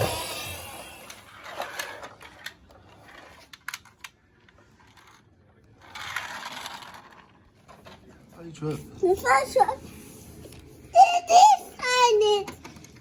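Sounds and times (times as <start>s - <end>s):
toy vehicles clicking and knocking: 0.0s - 8.0s, 11.8s - 13.0s.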